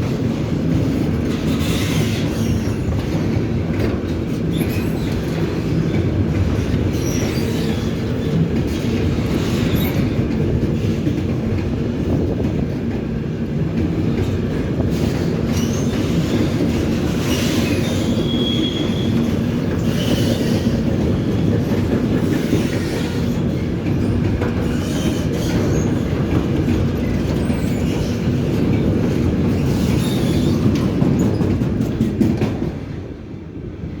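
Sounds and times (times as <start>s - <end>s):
train wheels rumbling on rails: 0.0s - 34.0s
high wheel squeal: 17.2s - 19.2s.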